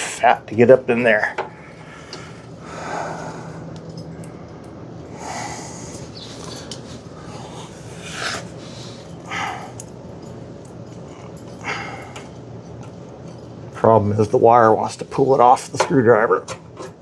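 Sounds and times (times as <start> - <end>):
low steady hum: 0.0 - 17.0
breathy exhales: 1.6 - 3.7, 5.1 - 9.8.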